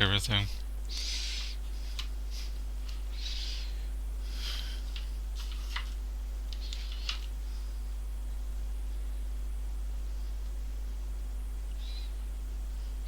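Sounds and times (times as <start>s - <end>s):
electrical hum: 0.0s - 13.0s
soft breaths: 0.5s - 6.0s, 6.6s - 8.1s, 9.9s - 11.0s.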